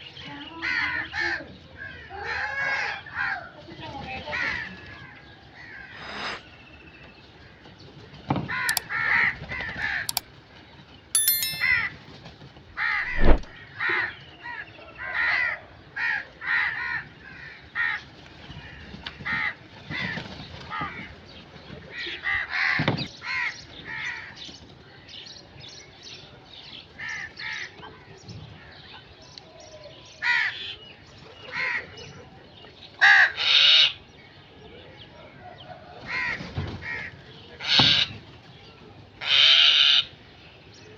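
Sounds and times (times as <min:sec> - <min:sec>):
sharp clicks: 0:11.2 - 0:11.7.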